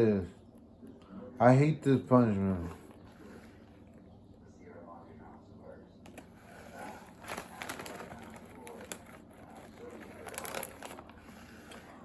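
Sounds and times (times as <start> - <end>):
rustling and crackling handling noise: 6.1 - 11.8.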